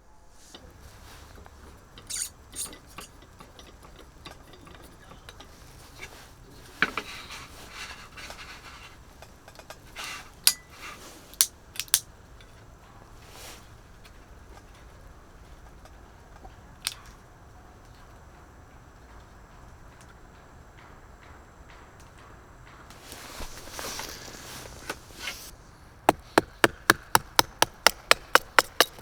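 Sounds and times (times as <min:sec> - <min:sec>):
small hard objects clicking and clinking: 0:26.2 - 0:29.0.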